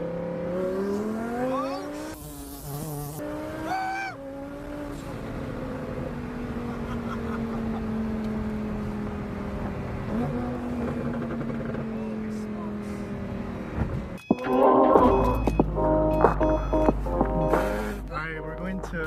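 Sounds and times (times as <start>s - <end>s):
car engine running: 4.3s - 19.0s.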